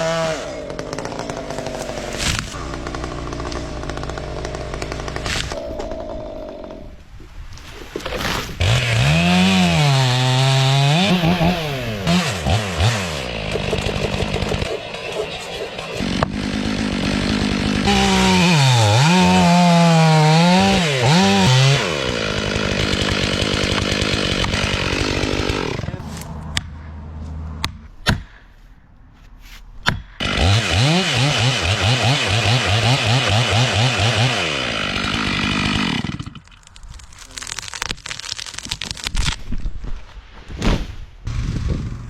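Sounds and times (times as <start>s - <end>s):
chainsaw cutting wood: 0.0s - 7.0s, 8.0s - 26.0s, 30.2s - 36.6s, 41.3s - 42.0s.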